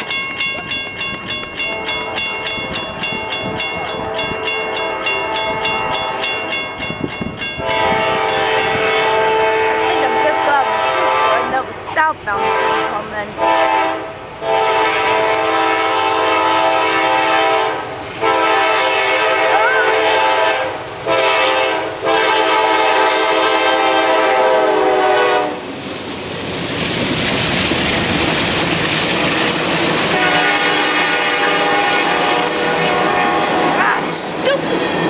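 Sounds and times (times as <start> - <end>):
train passing: 0.0 - 35.0
locomotive air horn: 4.0 - 6.3, 7.6 - 11.6, 12.3 - 25.6, 30.1 - 33.8.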